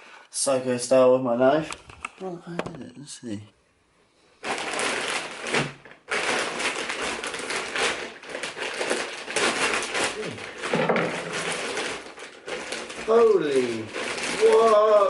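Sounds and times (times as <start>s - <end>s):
packaging crinkling and tearing: 4.4s - 15.0s.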